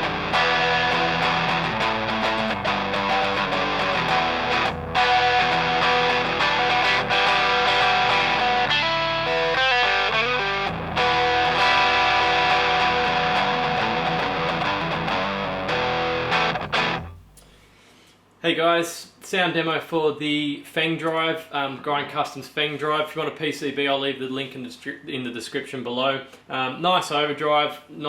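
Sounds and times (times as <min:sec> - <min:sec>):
distorted electric guitar: 0:00.0 - 0:17.3.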